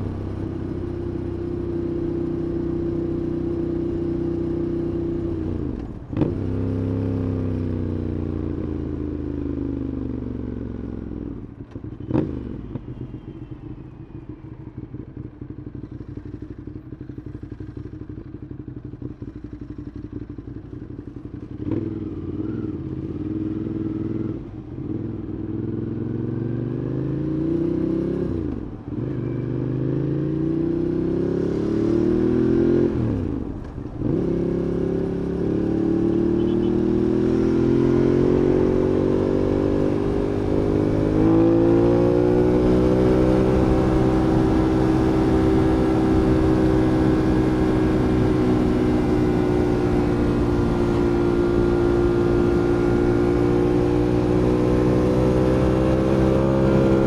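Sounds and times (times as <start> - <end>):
motorcycle engine accelerating: 14.8 - 57.0.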